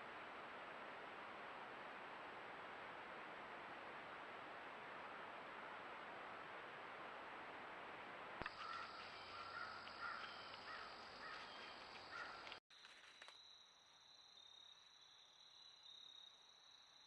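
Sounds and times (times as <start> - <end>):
microphone hiss: 0.0 - 9.4
crows cawing: 8.4 - 12.6.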